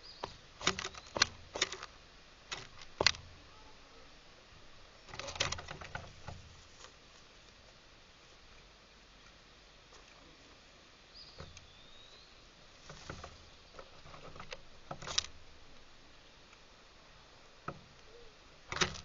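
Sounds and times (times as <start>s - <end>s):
songbird high call: 0.0s - 1.2s, 11.1s - 12.5s, 18.0s - 18.5s.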